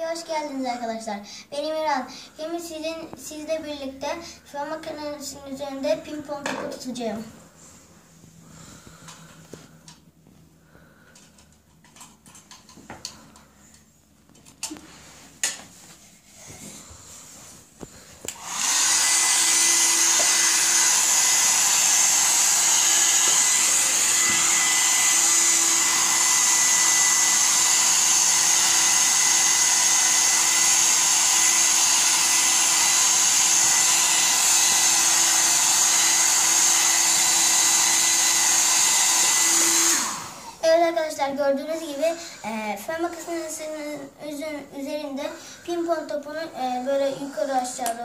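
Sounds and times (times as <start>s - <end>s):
hair dryer running: 18.2s - 40.8s.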